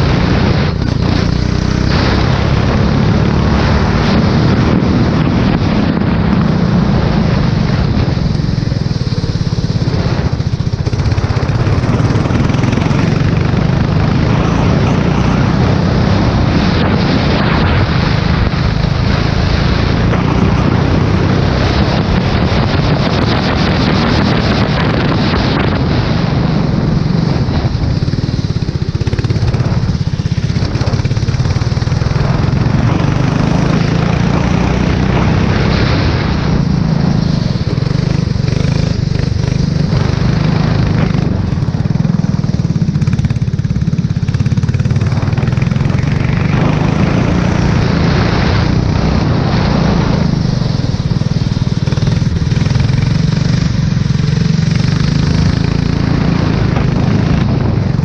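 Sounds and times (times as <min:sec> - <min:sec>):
race car engine running hard: 0:00.0 - 0:58.0.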